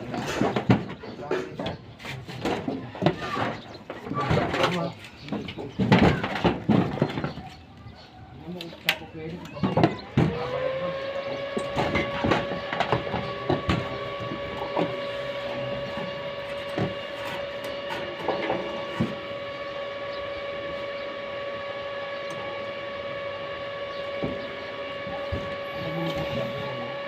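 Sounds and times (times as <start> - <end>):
machine motor whine: 8.5 - 27.0.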